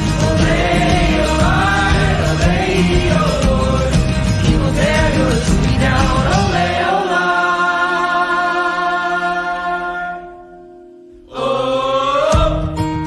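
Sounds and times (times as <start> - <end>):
group singing folk song: 0.0 - 10.6, 11.3 - 13.0
folk band playing: 0.2 - 7.6.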